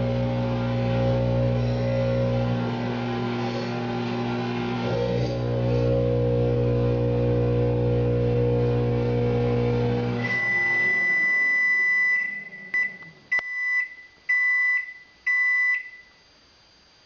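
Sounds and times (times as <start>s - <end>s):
microwave oven beep: 0.9s - 2.9s, 9.5s - 16.2s.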